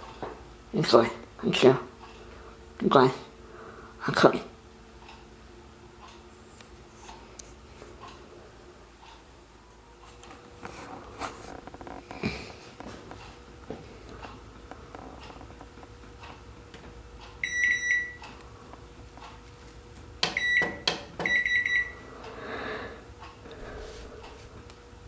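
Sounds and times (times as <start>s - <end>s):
steady hum: 0.0s - 25.0s
microwave beeping: 17.1s - 18.4s, 20.1s - 22.2s.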